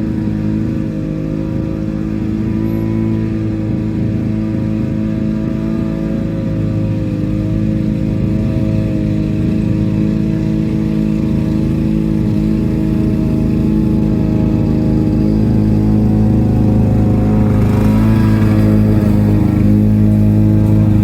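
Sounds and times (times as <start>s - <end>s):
lawn mower engine running: 0.0s - 21.0s.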